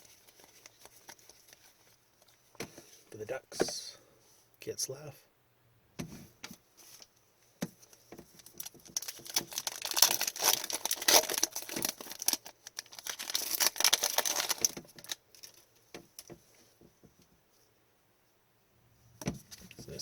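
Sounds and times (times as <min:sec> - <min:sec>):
wrapper crinkling and tearing: 0:00.0 - 0:02.4, 0:08.4 - 0:15.7
cards being handled: 0:00.0 - 0:02.8.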